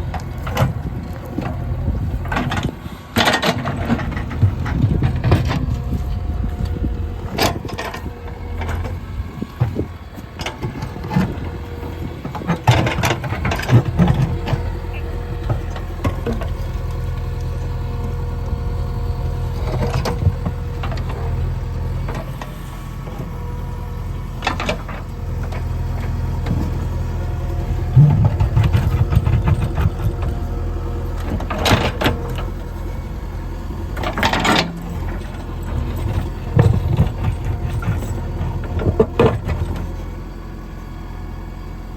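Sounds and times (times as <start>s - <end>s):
diesel engine running: 0.0s - 41.9s
digger clanking on stones: 0.1s - 18.2s, 27.6s - 32.9s, 33.8s - 40.0s.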